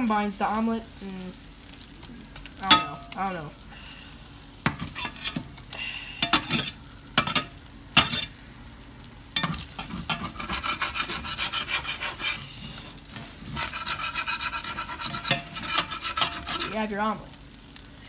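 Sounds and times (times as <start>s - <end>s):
egg sizzling: 0.0s - 18.0s
spatula scraping frying pan: 2.4s - 3.3s, 4.7s - 8.4s, 9.4s - 17.2s.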